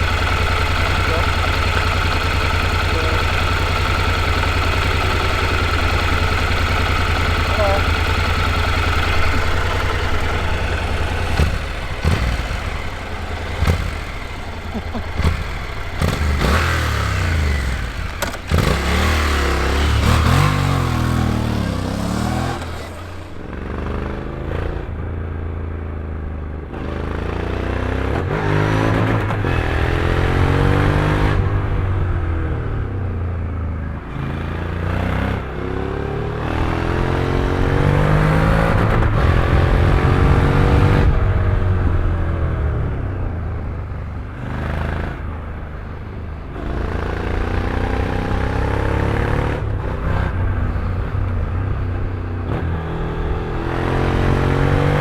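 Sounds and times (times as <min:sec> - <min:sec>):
vehicle engines accelerating: 0:00.0 - 0:55.0.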